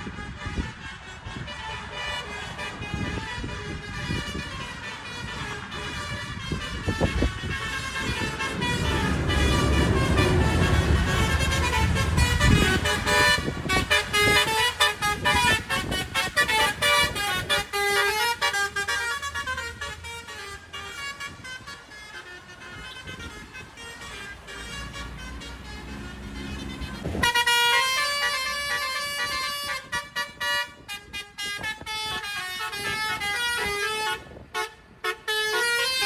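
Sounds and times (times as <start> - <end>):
truck horn playing a melody: 0.0 - 36.0
low rumble: 7.3 - 13.5.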